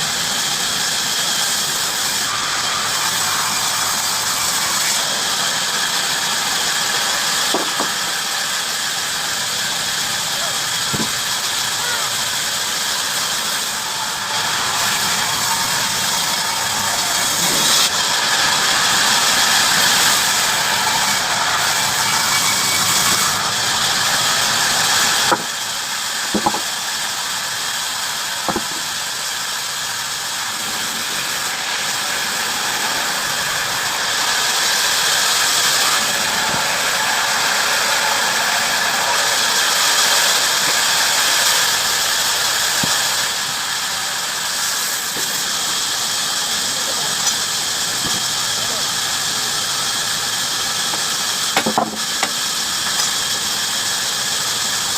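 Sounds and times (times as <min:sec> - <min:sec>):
bandsaw cutting wood: 0:00.0 - 0:54.9
sharp knocks: 0:07.5 - 0:07.9, 0:10.9 - 0:11.1, 0:26.3 - 0:26.7, 0:28.5 - 0:28.8, 0:51.6 - 0:52.4.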